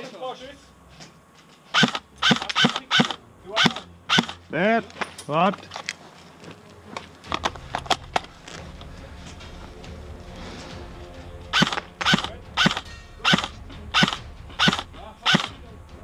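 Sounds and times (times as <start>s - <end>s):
steady hum: 0.0s - 16.0s
airsoft gun shots: 1.8s - 4.4s, 11.6s - 15.6s.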